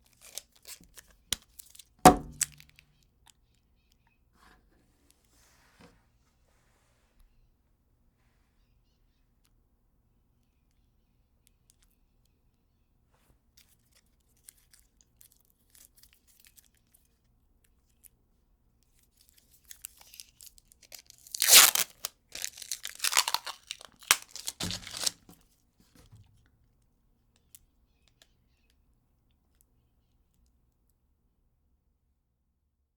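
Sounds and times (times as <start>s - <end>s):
tape crinkling: 0.0s - 2.8s, 19.2s - 25.3s
tape ripping: 0.1s - 2.7s, 20.0s - 25.3s
dull knock: 2.1s - 2.4s.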